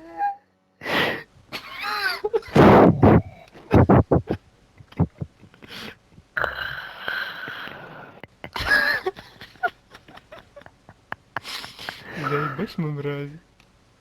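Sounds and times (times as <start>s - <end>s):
high wheezing laugh: 0.8s - 6.0s, 7.2s - 12.7s
men laughing hard: 1.5s - 6.4s, 8.0s - 12.8s.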